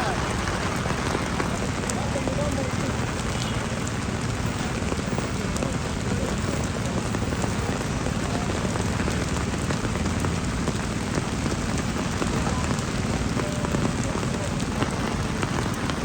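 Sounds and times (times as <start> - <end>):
heavy rain falling: 0.0 - 16.0.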